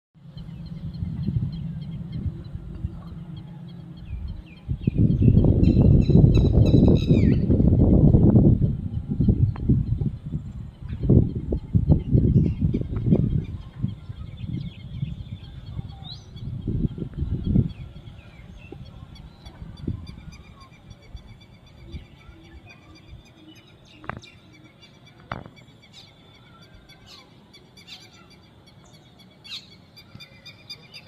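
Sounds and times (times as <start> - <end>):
low rumble: 0.2 - 22.3
bird chirping: 8.9 - 31.0.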